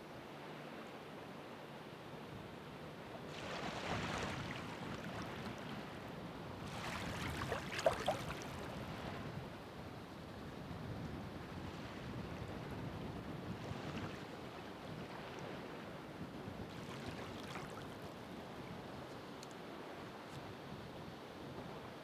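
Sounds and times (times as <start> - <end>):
fizzing crackling surf wash: 3.3 - 9.0
ocean waves breaking: 3.3 - 9.2.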